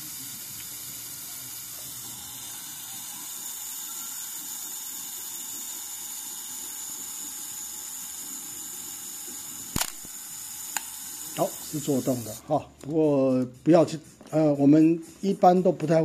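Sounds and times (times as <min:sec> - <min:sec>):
self-timer whirring buzz: 0:00.0 - 0:12.4
camera shutter click: 0:09.7 - 0:11.0.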